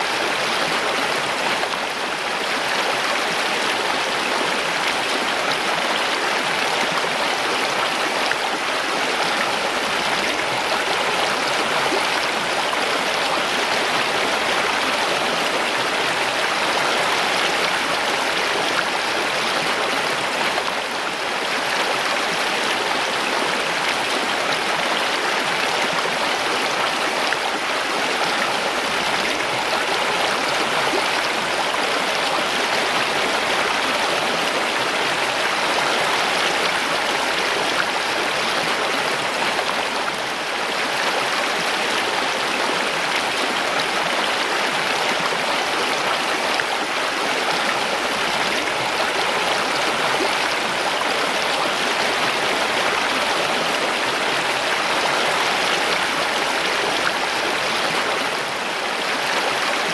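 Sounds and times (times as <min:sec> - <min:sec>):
stream rushing over rocks: 0:00.0 - 0:59.9.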